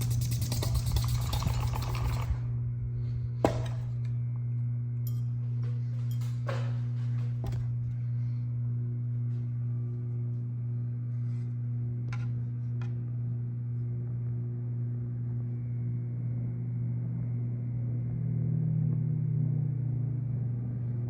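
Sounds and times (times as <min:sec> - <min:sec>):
ceiling fan motor hum: 0:00.0 - 0:21.0.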